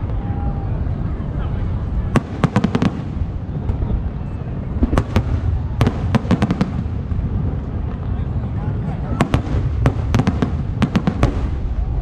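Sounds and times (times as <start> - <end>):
fireworks rumble: 0.0 - 12.0
fireworks sharp cracks: 2.1 - 3.4, 4.8 - 7.5, 9.2 - 11.9.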